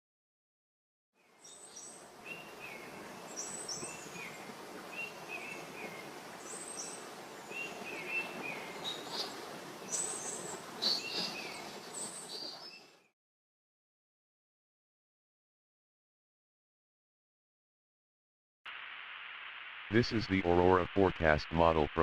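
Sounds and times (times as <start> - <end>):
birds chirping: 1.4 - 13.1.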